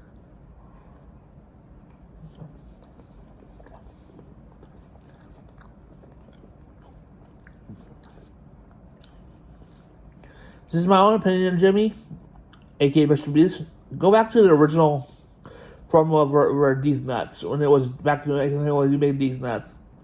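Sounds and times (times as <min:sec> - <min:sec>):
faint chewing: 0:00.0 - 0:10.6, 0:12.0 - 0:12.8.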